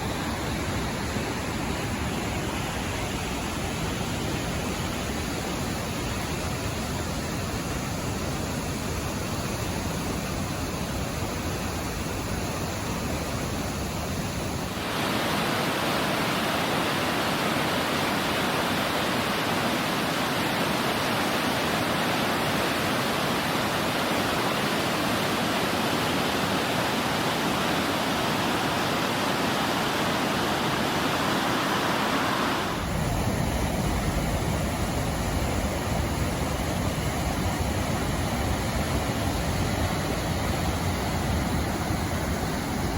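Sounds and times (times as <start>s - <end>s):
river water rushing: 0.0s - 42.9s.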